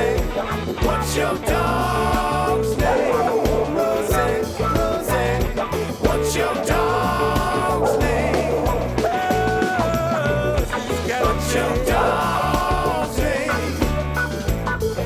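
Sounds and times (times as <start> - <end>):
upbeat rock band music: 0.0 - 15.0.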